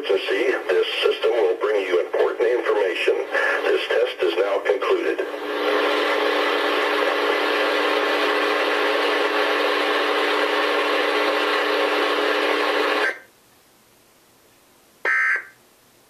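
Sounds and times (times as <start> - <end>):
two-tone alert signal: 15.1 - 15.6.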